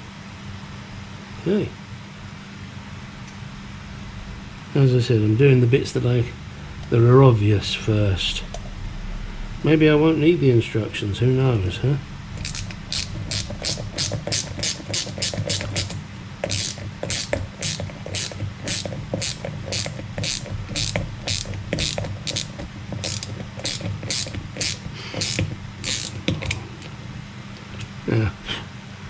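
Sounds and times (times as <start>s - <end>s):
ratchet wrench clicking: 12.4s - 26.6s.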